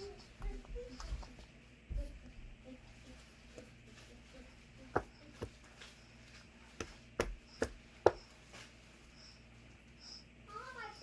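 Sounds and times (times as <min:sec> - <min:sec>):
knocks on a hard surface: 0:05.0 - 0:05.6, 0:06.8 - 0:08.3.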